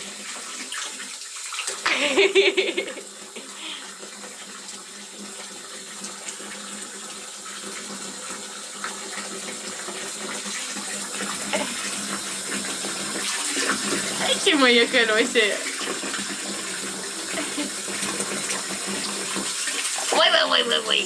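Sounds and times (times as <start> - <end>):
tap water running: 0.0 - 21.0.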